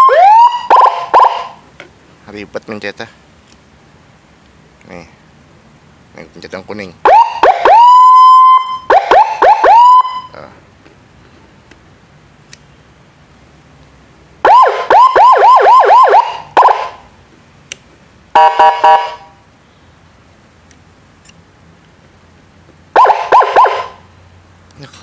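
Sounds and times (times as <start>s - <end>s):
electronic siren through loudspeaker: 0.0s - 1.6s, 7.0s - 10.4s, 14.4s - 17.0s, 18.4s - 19.3s, 23.0s - 24.0s.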